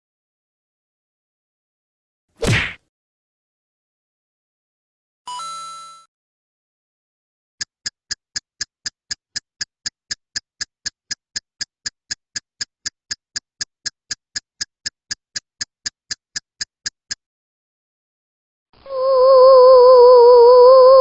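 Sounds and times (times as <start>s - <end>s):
sharp ticking: 7.6s - 17.2s.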